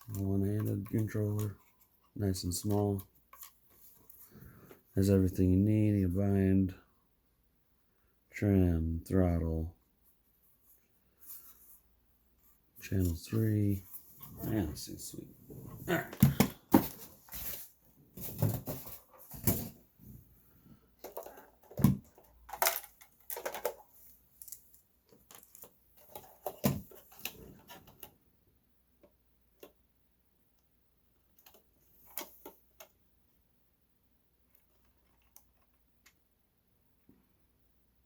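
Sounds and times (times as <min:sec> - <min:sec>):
handling clicks and rustles: 0:21.0 - 0:28.2.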